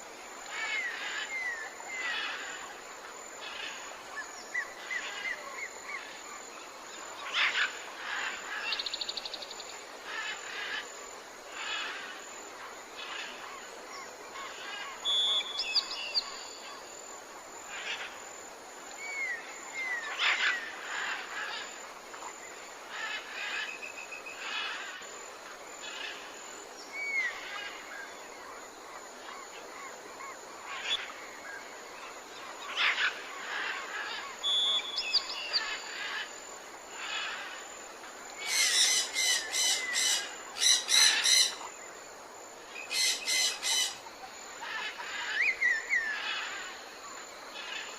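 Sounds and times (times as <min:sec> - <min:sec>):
insects hissing: 0:00.0 - 0:47.9
birds calling: 0:38.4 - 0:41.7, 0:42.7 - 0:46.8.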